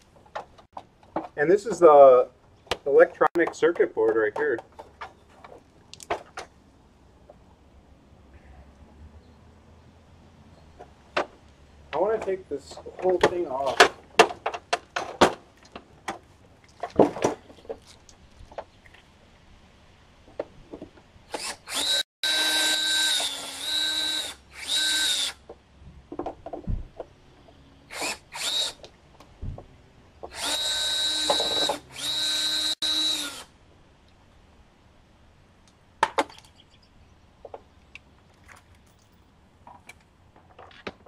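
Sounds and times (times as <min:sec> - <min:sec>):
handling clicks and knocks: 0:00.0 - 0:01.8, 0:02.4 - 0:06.6, 0:10.7 - 0:19.0
power drill whining: 0:21.3 - 0:25.4, 0:27.9 - 0:28.8, 0:30.3 - 0:33.5.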